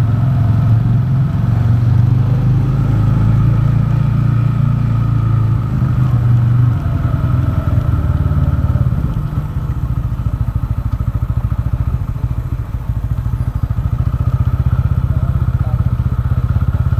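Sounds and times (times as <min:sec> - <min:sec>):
motorcycle engine thumping: 0:07.7 - 0:16.9.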